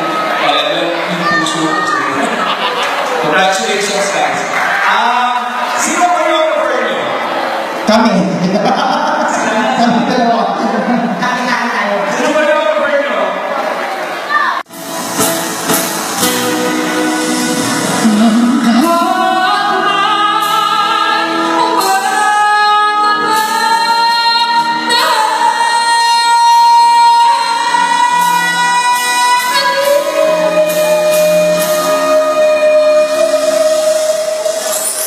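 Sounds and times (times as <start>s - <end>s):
backing music: 14.7s - 35.0s
high solo singing voice: 16.5s - 35.0s.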